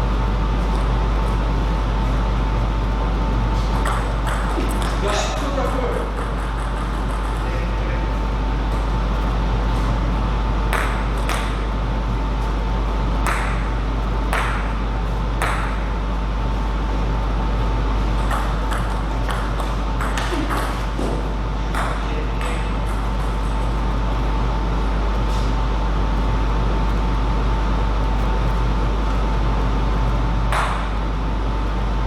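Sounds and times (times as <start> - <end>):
low electrical hum: 0.0 - 32.0
table tennis ball hits: 3.7 - 7.8, 10.7 - 11.6, 13.2 - 13.7, 14.3 - 14.8, 15.4 - 15.9, 18.2 - 23.6, 30.5 - 31.0.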